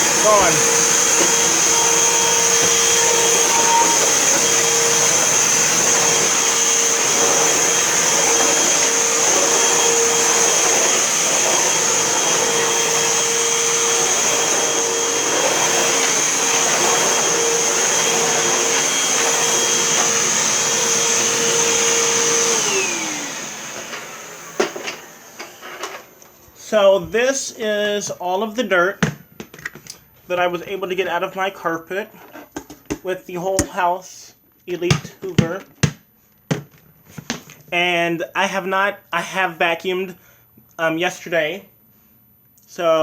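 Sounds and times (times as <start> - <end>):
vacuum cleaner whine: 0.0 - 28.4.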